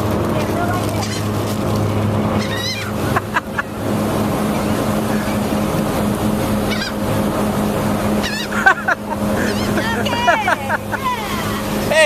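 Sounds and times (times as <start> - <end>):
ferry engine drone: 0.0 - 12.0
gulls calling: 0.3 - 12.0.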